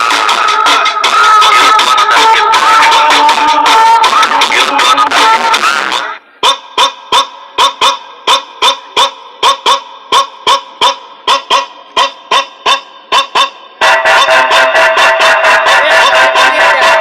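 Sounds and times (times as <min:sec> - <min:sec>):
loud music through car speakers: 0:00.0 - 0:17.0.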